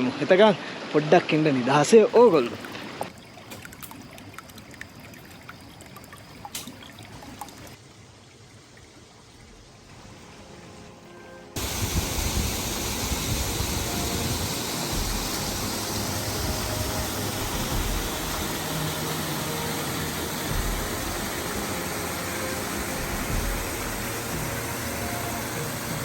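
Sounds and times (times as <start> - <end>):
waterfall roaring: 11.6 - 26.0.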